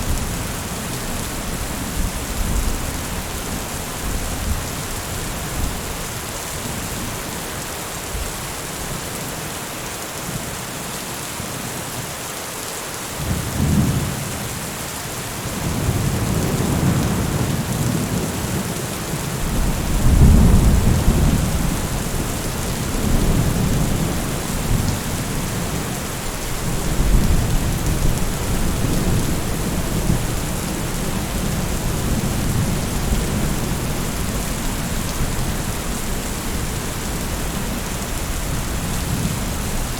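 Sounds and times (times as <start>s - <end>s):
heavy rain hiss: 0.0s - 39.9s
thunder rumbling: 19.4s - 39.9s.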